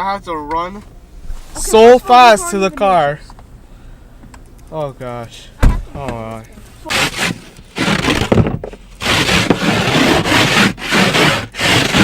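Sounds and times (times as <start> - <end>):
scraping ice off car window: 6.8 - 12.0.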